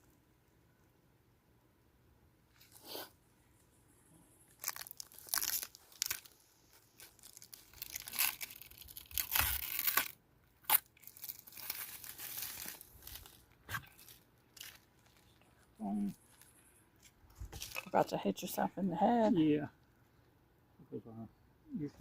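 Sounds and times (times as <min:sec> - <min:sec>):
plastic film tearing and crinkling: 0:04.5 - 0:15.4.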